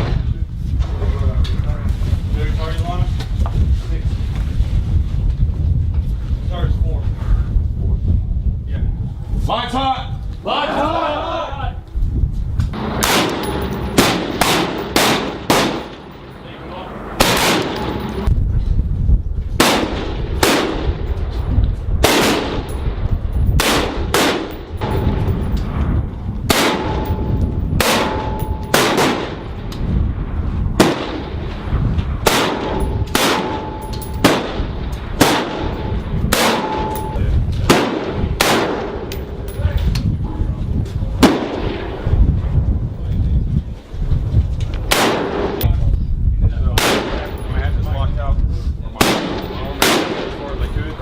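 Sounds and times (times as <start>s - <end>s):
rifle shots echoing: 12.8s - 16.4s, 17.1s - 18.3s, 19.6s - 21.1s, 22.0s - 23.0s, 23.6s - 25.6s, 26.5s - 29.7s, 30.8s - 39.4s, 41.2s - 42.0s, 44.9s - 45.6s, 46.8s - 47.3s, 49.0s - 50.4s.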